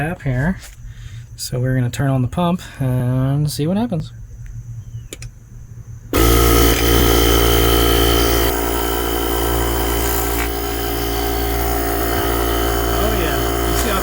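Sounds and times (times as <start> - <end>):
small electric air compressor running: 6.1 - 14.0.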